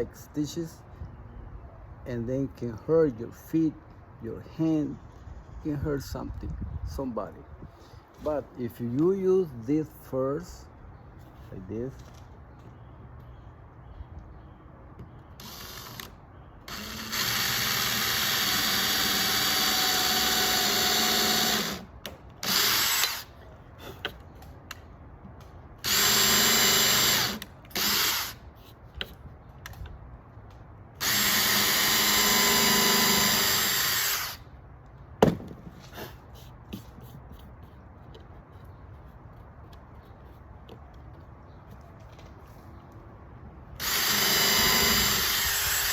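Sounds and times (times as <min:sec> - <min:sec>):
power drill whining: 0:16.7 - 0:21.8, 0:25.8 - 0:28.4, 0:31.0 - 0:34.4, 0:43.8 - 0:45.9.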